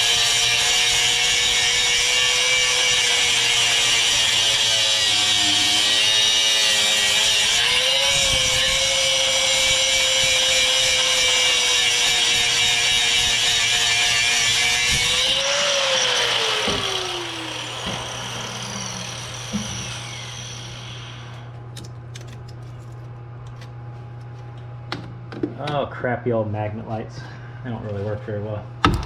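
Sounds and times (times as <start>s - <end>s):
abrasive cutting wheel whining: 0.0s - 21.5s.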